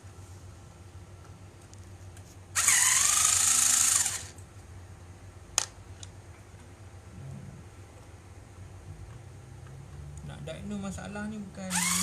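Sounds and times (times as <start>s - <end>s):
electric screwdriver running: 2.6s - 4.4s, 11.7s - 12.0s.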